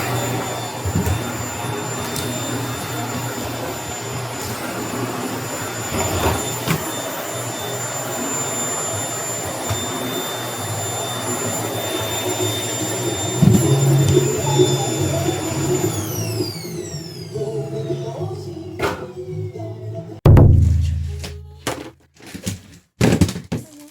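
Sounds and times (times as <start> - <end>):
vacuum cleaner motor whine: 0.0 - 19.1
vacuum nozzle rumbling on floor: 8.8 - 16.6.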